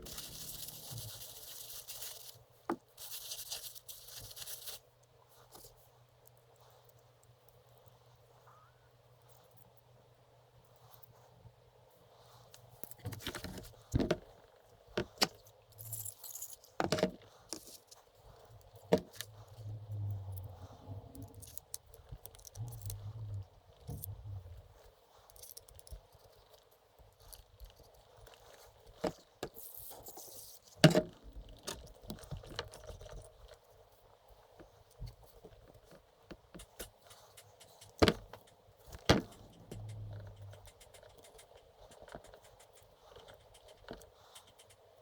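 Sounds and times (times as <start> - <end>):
metal parts and tools clinking: 15.8 - 17.8.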